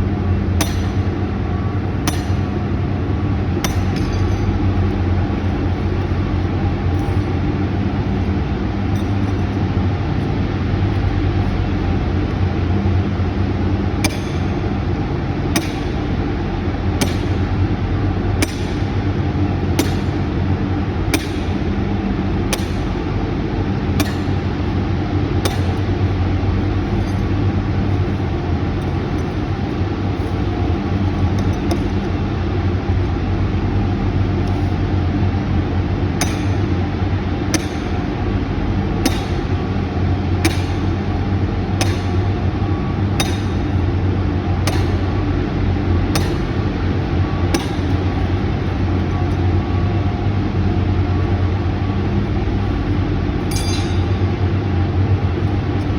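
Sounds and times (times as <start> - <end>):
sledgehammer striking steel pins: 0.6 - 1.1, 2.1 - 2.5, 17.0 - 17.5, 18.4 - 18.9, 19.8 - 20.2, 24.0 - 24.5, 25.4 - 25.9, 36.2 - 36.8, 37.6 - 38.1, 39.1 - 39.6, 40.4 - 41.0, 41.8 - 42.3, 43.2 - 43.8, 44.6 - 45.1, 46.1 - 46.6, 47.5 - 48.0, 53.5 - 54.2.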